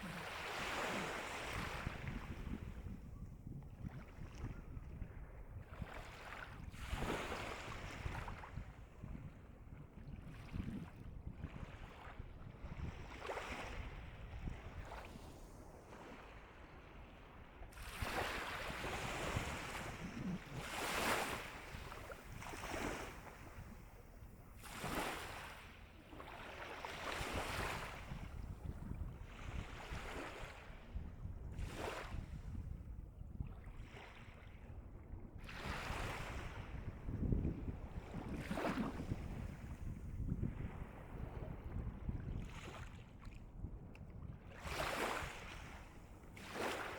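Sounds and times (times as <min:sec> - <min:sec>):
sea waves breaking: 0:17.8 - 0:28.2, 0:44.6 - 0:46.9.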